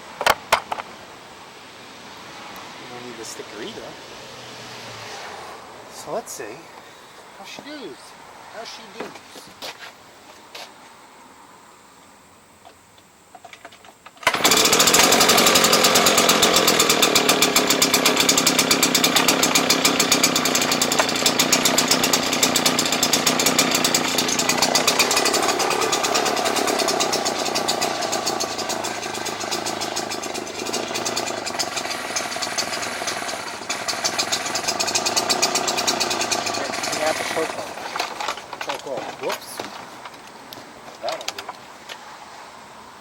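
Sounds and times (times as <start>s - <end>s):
leaf blower engine running: 14.2s - 39.7s
fan rushing: 14.2s - 40.4s.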